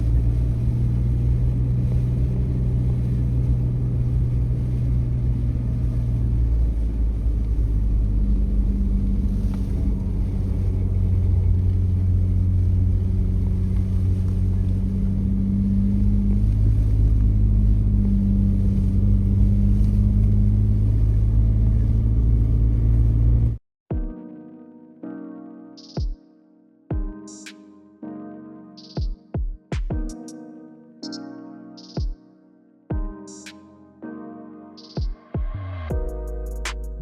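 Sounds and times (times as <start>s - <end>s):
car engine and road rumble: 0.0s - 23.6s, 34.8s - 37.0s
faint engine hum: 0.0s - 23.6s.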